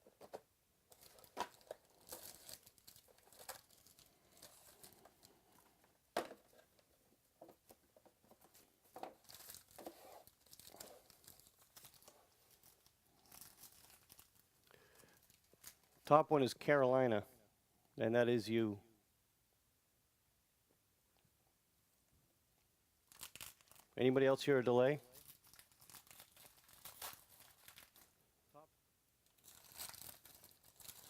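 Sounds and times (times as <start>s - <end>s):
packaging tearing and crinkling: 0.9s - 5.4s, 9.1s - 16.0s, 23.1s - 24.0s, 25.1s - 28.1s, 29.3s - 31.0s.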